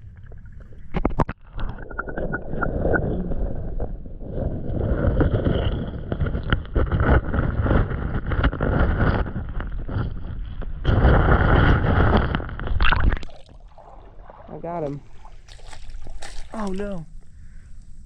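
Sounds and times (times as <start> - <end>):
rocks knocking and clunking: 4.7 - 13.3
creek water splashing: 12.8 - 17.6.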